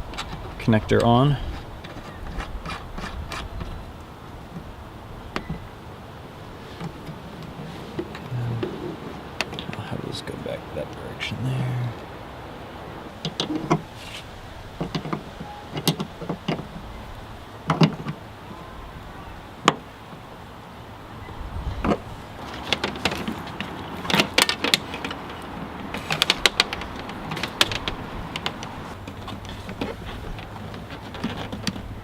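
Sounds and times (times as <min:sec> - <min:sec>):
clicks and knocks of cable work: 0:00.0 - 0:04.7, 0:13.2 - 0:16.9, 0:17.6 - 0:18.2, 0:21.8 - 0:32.0.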